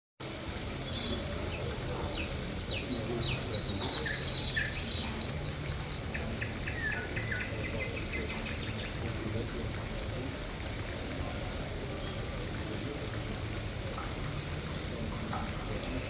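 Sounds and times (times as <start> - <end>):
background hiss: 0.2 - 16.0
birds chirping and trilling: 0.4 - 9.5.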